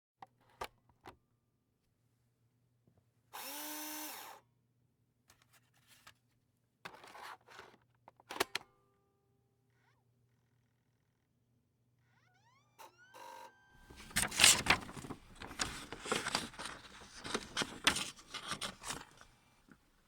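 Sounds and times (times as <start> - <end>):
scraping rustle: 13.8 - 19.3.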